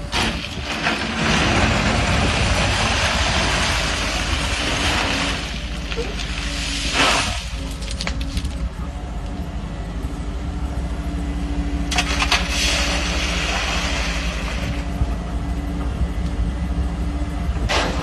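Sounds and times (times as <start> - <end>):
excavator diesel engine rumble: 0.0 - 18.0.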